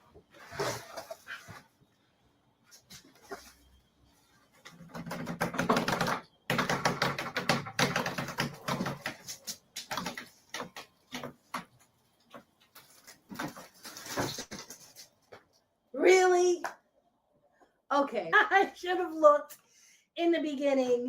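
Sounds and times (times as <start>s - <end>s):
wooden shelf clicking and knocking: 4.6s - 14.7s.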